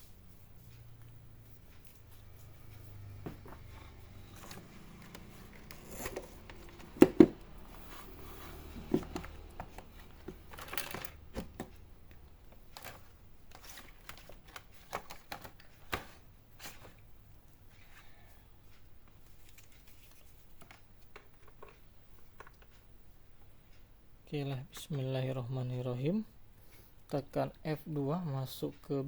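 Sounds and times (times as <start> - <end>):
objects handled with clicks and rustling: 0.3 - 17.0, 18.6 - 23.0.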